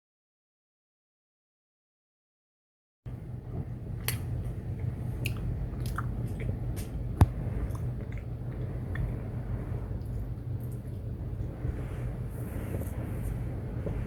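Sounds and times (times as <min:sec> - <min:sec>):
storm wind rumble: 0:04.6 - 0:14.0.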